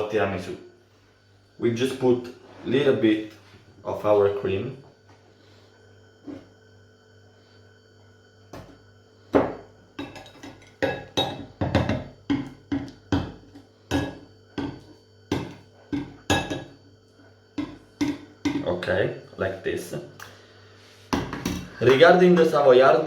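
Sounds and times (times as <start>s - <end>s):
spoon knocking and scraping a dish: 9.4s - 16.8s, 17.6s - 18.7s.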